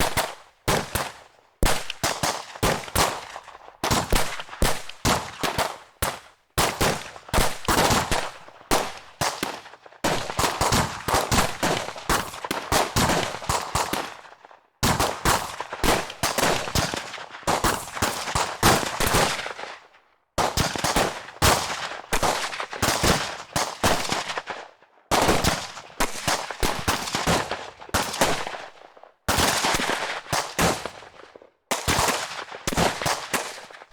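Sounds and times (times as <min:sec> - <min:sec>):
rapid gunfire bursts: 0:00.0 - 0:14.1.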